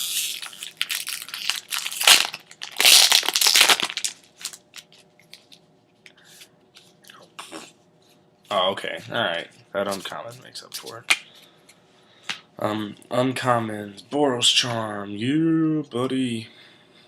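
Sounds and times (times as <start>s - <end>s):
wrapper tearing and crinkling: 0.0s - 5.5s.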